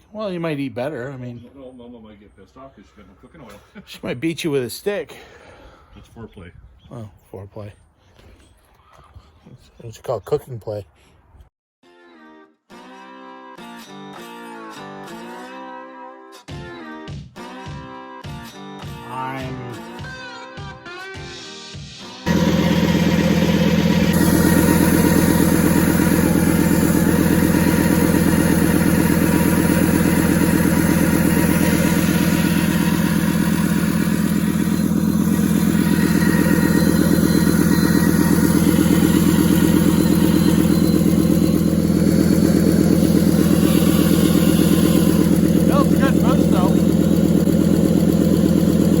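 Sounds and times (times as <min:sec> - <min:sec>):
diesel engine running: 0:22.3 - 0:49.0.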